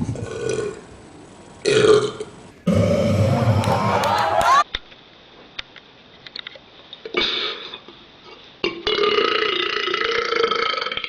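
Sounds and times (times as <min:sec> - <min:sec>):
man belching: 0:01.6 - 0:03.6, 0:08.6 - 0:11.0.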